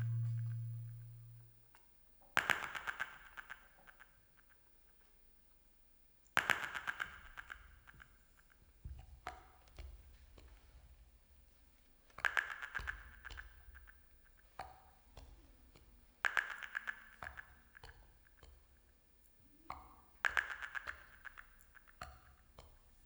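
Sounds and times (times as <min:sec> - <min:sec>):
short ringing ping: 0:00.0 - 0:01.4.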